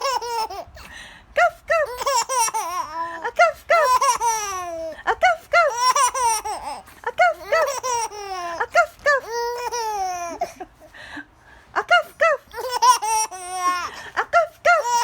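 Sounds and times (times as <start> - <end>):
baby laughing: 0.0 - 0.8, 1.7 - 10.8, 11.8 - 15.0
baby squealing: 14.7 - 15.0.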